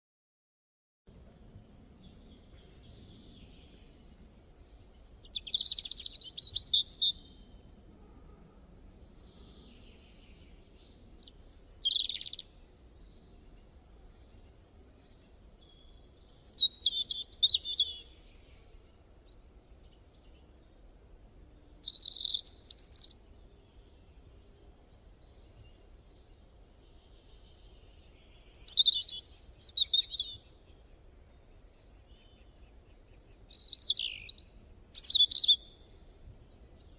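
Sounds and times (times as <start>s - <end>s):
faint low hum: 1.1s - 6.4s
bird chirps and whistles: 21.9s - 23.2s, 33.6s - 35.8s.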